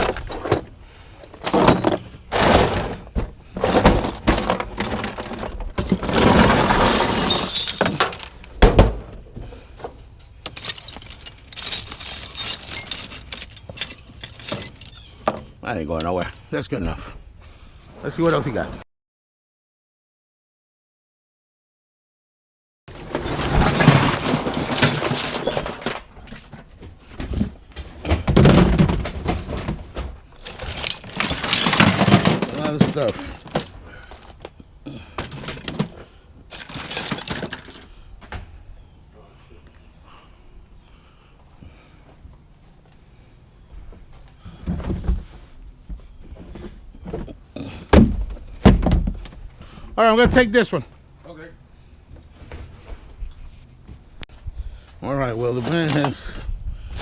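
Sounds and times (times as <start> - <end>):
metal tools clattering and clinking: 1.3 - 8.6, 10.4 - 16.5, 22.9 - 29.7, 30.4 - 38.0, 55.5 - 56.4.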